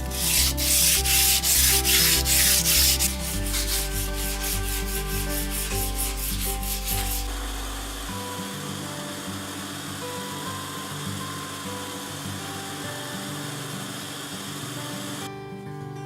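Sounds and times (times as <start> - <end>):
knife blade scraping on sandpaper: 0.0 - 7.5.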